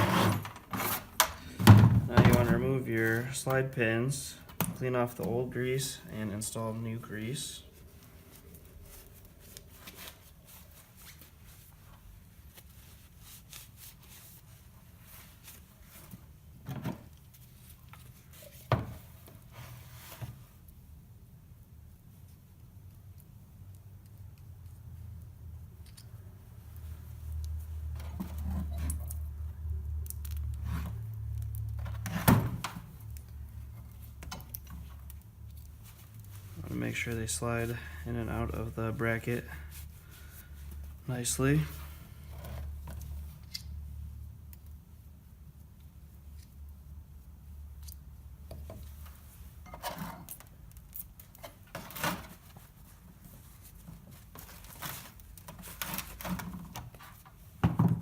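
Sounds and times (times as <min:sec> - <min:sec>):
hands rustling and clicking parts: 0:22.3 - 0:32.0, 0:47.7 - 0:58.0.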